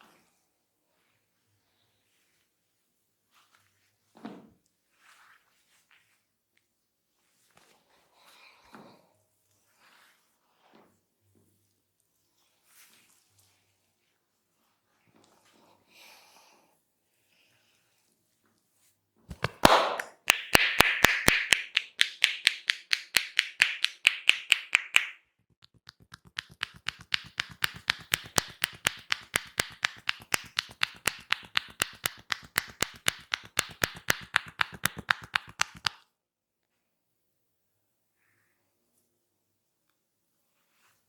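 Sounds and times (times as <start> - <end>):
hands tapping on head: 19.3 - 36.0.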